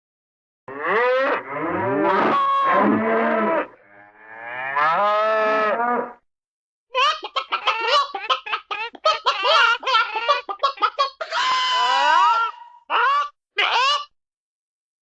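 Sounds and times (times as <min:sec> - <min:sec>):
animal wavering calls: 0:00.8 - 0:03.8, 0:08.9 - 0:14.1.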